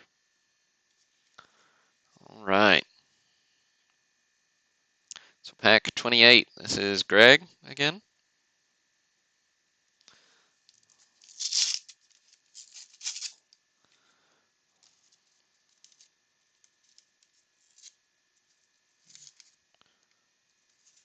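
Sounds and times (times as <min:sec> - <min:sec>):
card pack ripping open: 0:11.2 - 0:13.4
cards rustling and sliding: 0:11.2 - 0:13.4, 0:16.8 - 0:18.0, 0:19.0 - 0:19.6.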